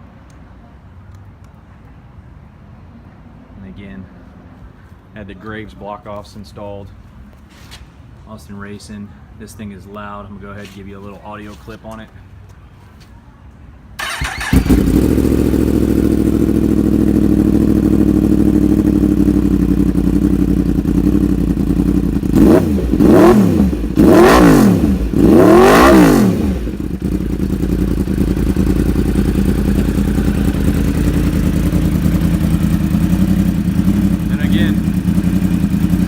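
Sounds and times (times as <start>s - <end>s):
motorcycle engine idling and revving: 14.0s - 36.0s.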